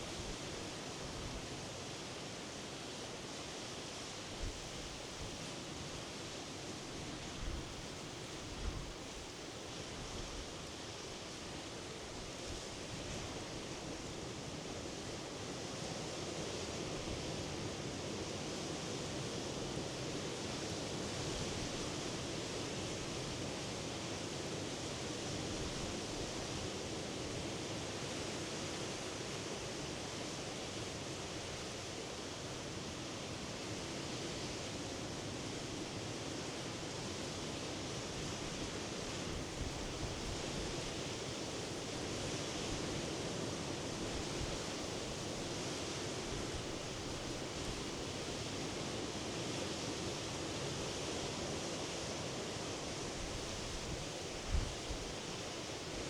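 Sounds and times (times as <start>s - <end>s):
sea surf washing on shore: 37.9s - 56.0s.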